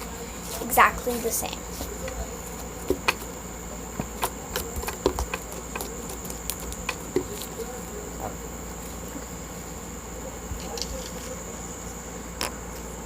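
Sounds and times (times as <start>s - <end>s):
slime squished by hand: 4.0s - 7.7s.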